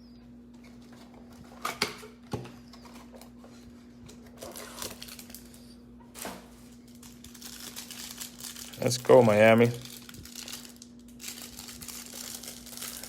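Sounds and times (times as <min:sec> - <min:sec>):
plastic wrap crinkling: 0:02.8 - 0:13.0.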